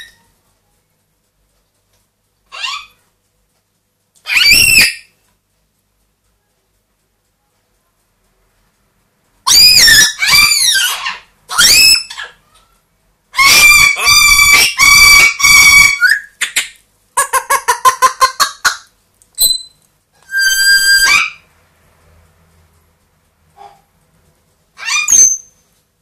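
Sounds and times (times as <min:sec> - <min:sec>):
parrot squawking and calling: 0:02.4 - 0:03.0, 0:04.2 - 0:05.1, 0:09.4 - 0:12.4, 0:13.3 - 0:21.5, 0:24.8 - 0:25.6
parrot whistle: 0:04.2 - 0:05.1, 0:09.4 - 0:12.4, 0:13.4 - 0:16.7, 0:19.4 - 0:21.4, 0:24.8 - 0:25.6.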